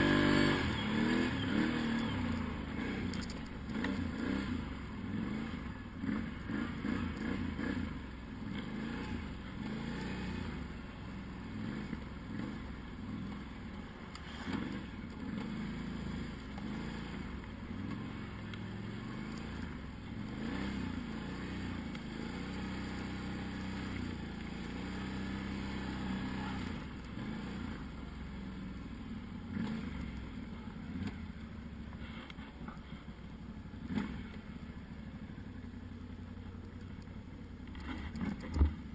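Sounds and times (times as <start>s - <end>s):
quad bike engine revving: 0.0s - 13.4s, 14.1s - 28.7s, 29.4s - 31.4s, 33.7s - 35.4s.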